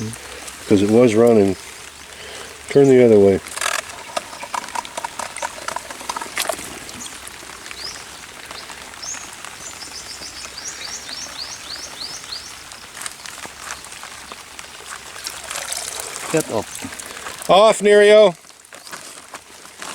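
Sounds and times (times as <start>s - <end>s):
faint outdoor noise: 0.0s - 19.9s
small clicks: 3.4s - 7.1s
bird calling high notes: 3.4s - 7.3s.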